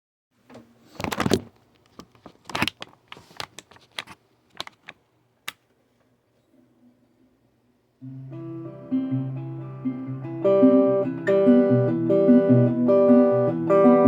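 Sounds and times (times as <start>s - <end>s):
handling noise clicks and rustles: 0.5s - 5.6s.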